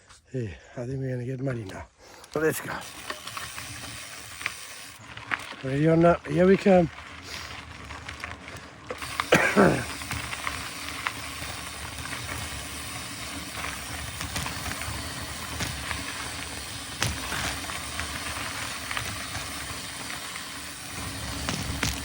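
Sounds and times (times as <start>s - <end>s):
bike tyres rumbling on trail: 2.4s - 22.0s.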